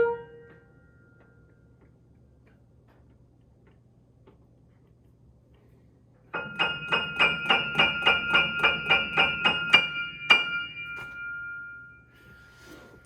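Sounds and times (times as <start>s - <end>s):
repeated high piano note: 0.0s - 1.5s, 6.3s - 12.6s.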